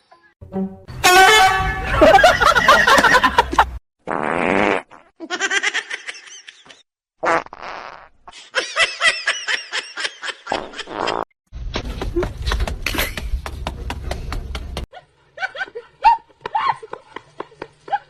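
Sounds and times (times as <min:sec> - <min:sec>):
rapid rhythmic laughter: 0:01.9 - 0:03.8.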